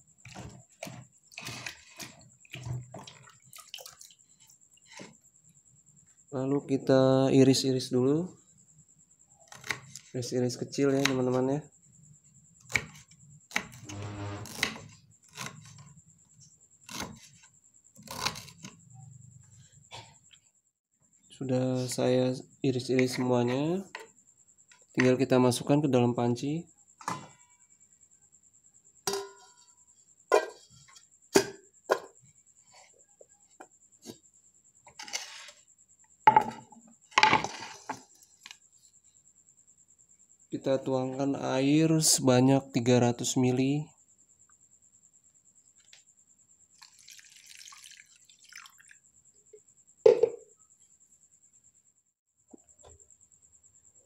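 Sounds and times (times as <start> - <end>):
knife scraping: 13.7 - 15.8.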